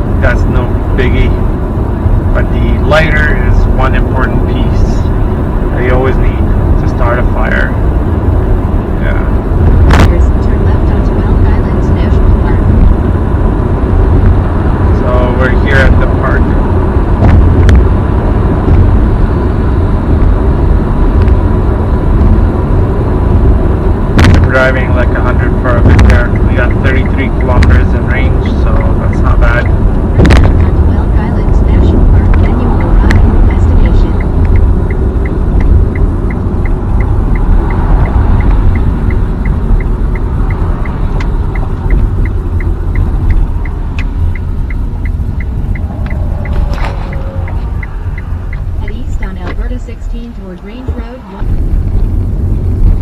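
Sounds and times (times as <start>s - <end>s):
deep cabin rumble: 0.0s - 53.0s
road and tyre noise: 0.0s - 53.0s
faint steady ticking: 24.2s - 53.0s.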